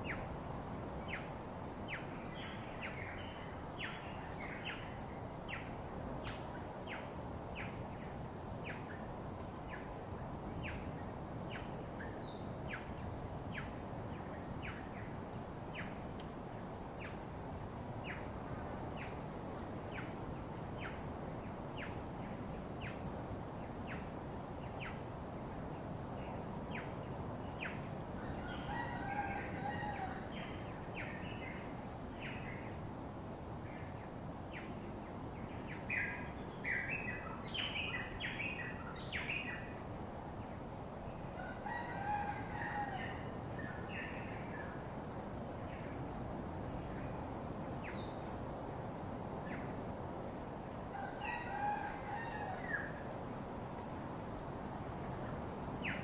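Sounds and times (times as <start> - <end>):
steady hiss: 0.0 - 56.0
rooster crowing: 28.2 - 30.4, 41.4 - 43.5, 50.9 - 53.1.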